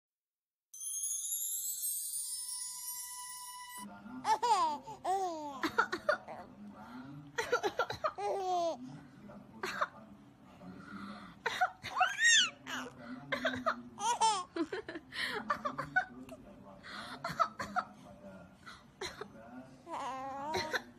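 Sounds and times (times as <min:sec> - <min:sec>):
woman coughing: 0:20.5 - 0:20.9.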